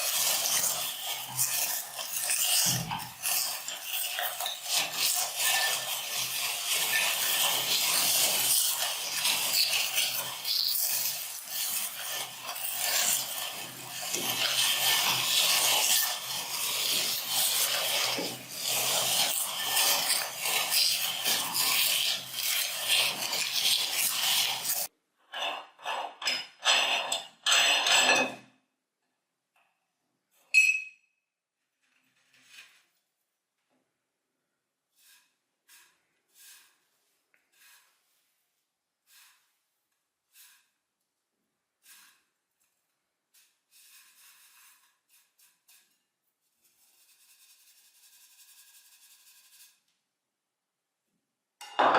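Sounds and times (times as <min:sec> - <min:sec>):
rice cake grinding: 0:00.0 - 0:25.8, 0:34.9 - 0:38.4, 0:39.0 - 0:39.6, 0:43.2 - 0:46.0.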